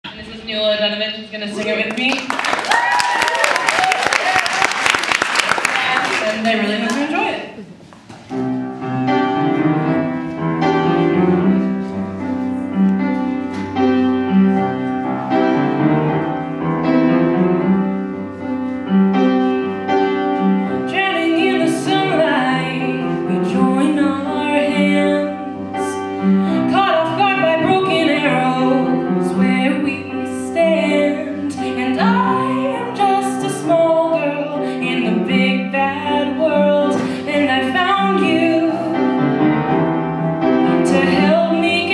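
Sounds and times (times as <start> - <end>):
piano accompaniment: 2.7 - 41.9
woman singing: 20.7 - 39.0, 40.7 - 41.9.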